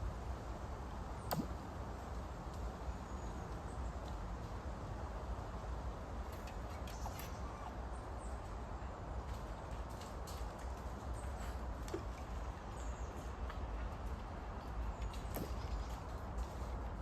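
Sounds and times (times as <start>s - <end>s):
outdoor background: 0.0s - 17.0s.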